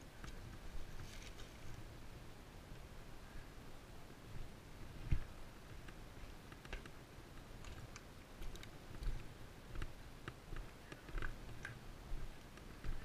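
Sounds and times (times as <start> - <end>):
soft footstep thumps: 8.4 - 13.0.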